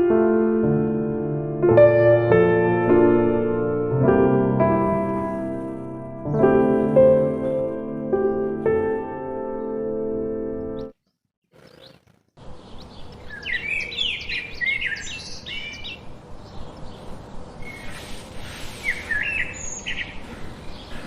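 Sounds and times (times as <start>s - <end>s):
piano phrase: 0.0s - 10.9s
birds chirping: 5.1s - 21.0s
outdoor background hiss: 12.4s - 21.0s.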